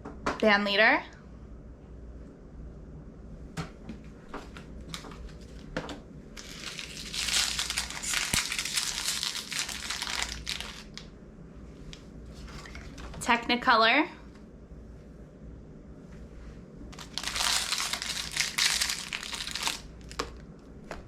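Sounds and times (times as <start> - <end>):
toy packaging crinkling: 6.4 - 11.0, 17.0 - 20.4.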